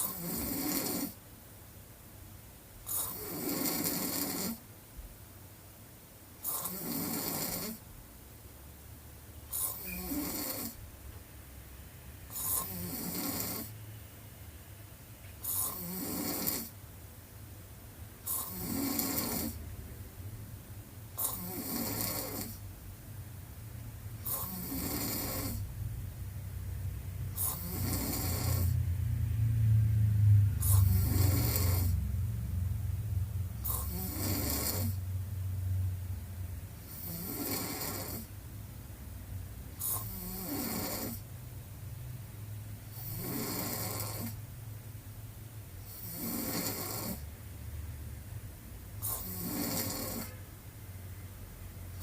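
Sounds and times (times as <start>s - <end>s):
woman snoring: 0.0s - 1.2s, 2.9s - 4.6s, 6.4s - 7.8s, 9.5s - 10.8s, 12.3s - 13.8s, 15.4s - 16.8s, 18.2s - 19.6s, 21.2s - 22.6s, 24.2s - 25.7s, 27.3s - 28.8s, 30.6s - 32.0s, 33.6s - 35.0s, 36.8s - 38.3s, 39.8s - 41.2s, 42.9s - 44.4s, 45.8s - 47.3s, 49.0s - 50.4s
low drone: 28.5s - 33.7s.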